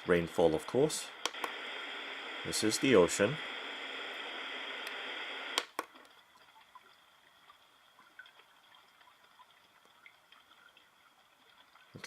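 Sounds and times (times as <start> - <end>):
white noise machine ocean sound: 0.0 - 12.0
water drips: 5.9 - 12.0.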